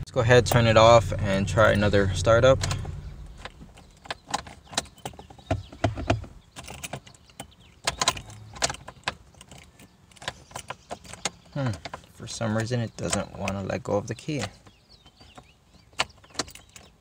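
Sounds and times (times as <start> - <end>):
car keys jangling: 1.7 - 13.6, 14.2 - 17.0
key clicking in ignition lock: 6.0 - 13.6.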